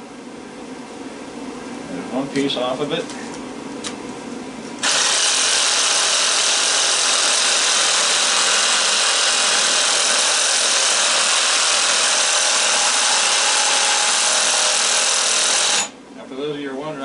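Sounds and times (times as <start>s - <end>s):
reciprocating saw cutting metal: 4.8s - 16.0s.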